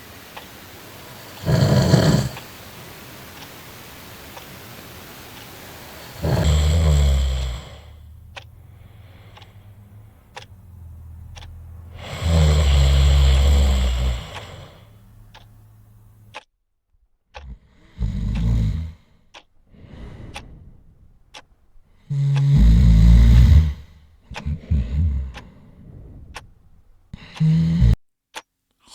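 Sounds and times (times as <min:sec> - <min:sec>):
clock ticking: 0:00.0 - 0:16.5, 0:17.3 - 0:28.9
loud snoring: 0:01.0 - 0:02.8, 0:05.2 - 0:16.3, 0:17.4 - 0:19.1, 0:22.0 - 0:26.4, 0:27.1 - 0:28.0.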